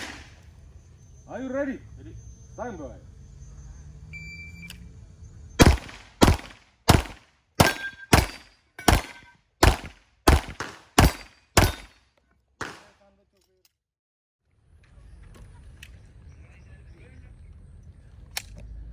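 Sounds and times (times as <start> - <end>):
pistol shots with ringing echo: 0.0 - 0.4, 5.6 - 12.0, 12.6 - 13.0.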